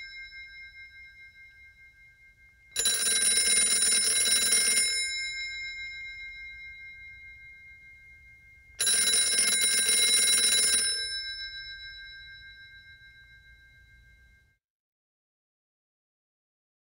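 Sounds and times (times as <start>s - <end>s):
telephone bell ringing: 0.0s - 0.7s, 2.8s - 6.9s, 8.8s - 13.4s.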